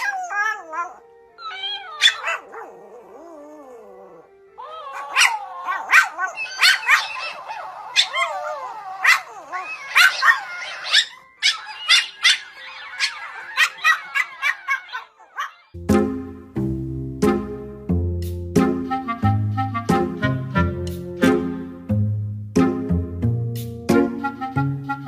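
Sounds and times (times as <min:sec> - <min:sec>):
dog whining: 0:00.0 - 0:15.8
dog yipping: 0:00.0 - 0:15.8.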